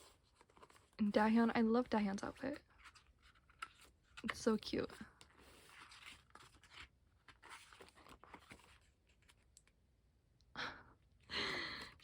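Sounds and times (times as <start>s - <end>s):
light scraping of pages: 0.0s - 1.1s, 1.7s - 9.7s
paper pages rustling: 0.0s - 9.8s.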